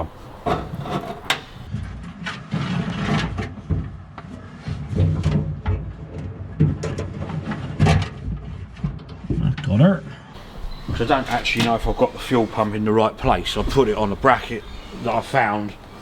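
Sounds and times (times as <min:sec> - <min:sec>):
metal parts knocking and scraping: 0:00.0 - 0:01.7, 0:10.4 - 0:15.0.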